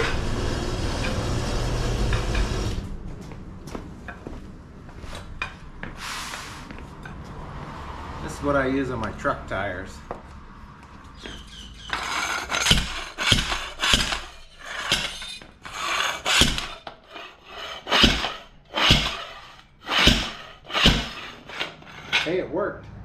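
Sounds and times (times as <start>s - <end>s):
tire tool scraping tire: 11.1s - 22.4s.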